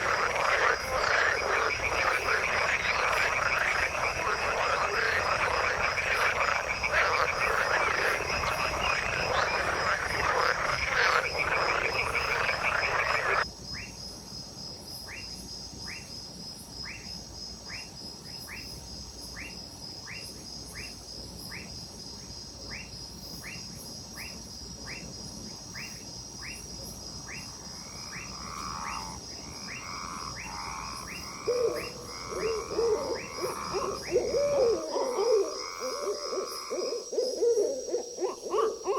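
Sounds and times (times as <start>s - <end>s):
low frog calls: 0.0s - 13.4s, 27.3s - 38.9s
frog chorus: 0.0s - 13.9s, 22.7s - 38.9s.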